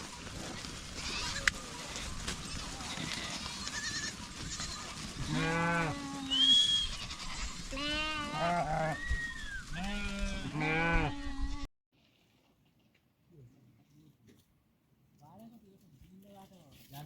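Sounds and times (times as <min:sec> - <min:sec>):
farm animals bleating: 0:00.9 - 0:09.0, 0:09.7 - 0:11.7.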